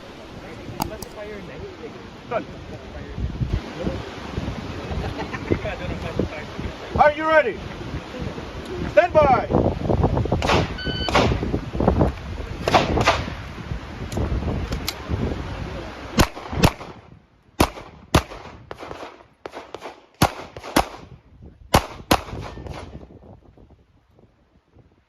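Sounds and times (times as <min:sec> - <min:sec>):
handgun shots: 0:10.4 - 0:11.4.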